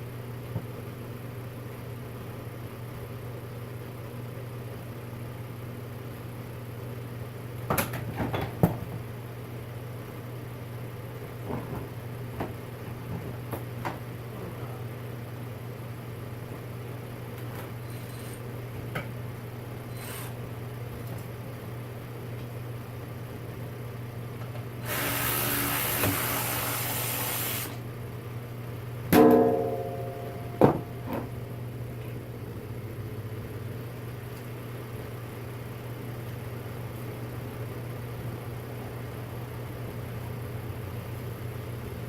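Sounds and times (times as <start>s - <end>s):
steady low hum: 8.5s - 25.0s, 27.6s - 42.0s
hiss: 24.9s - 27.8s.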